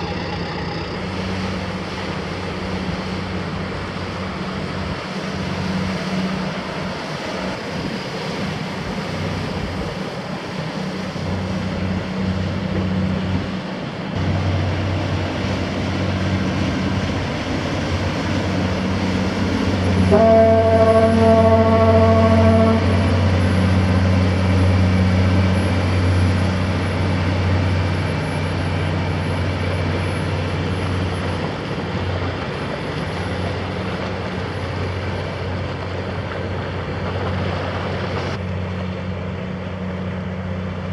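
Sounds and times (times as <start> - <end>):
diesel engine drone: 0.0 - 40.9
ship horn blast: 18.8 - 26.4.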